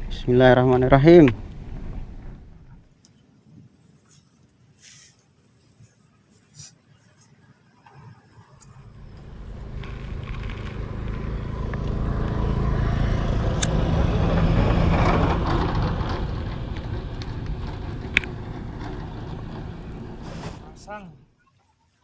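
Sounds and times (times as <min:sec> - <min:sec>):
engine passing by: 0:08.7 - 0:21.3.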